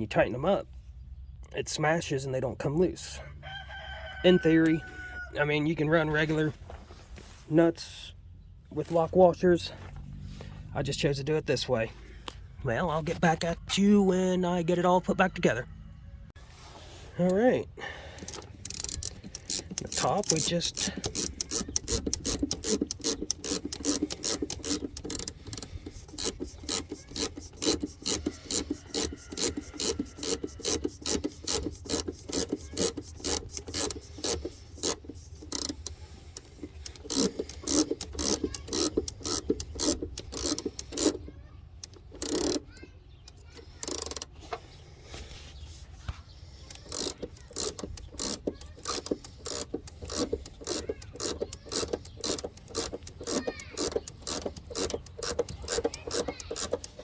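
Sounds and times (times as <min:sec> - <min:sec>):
ratchet wrench clicking: 0:18.2 - 0:44.4, 0:46.6 - 0:57.0.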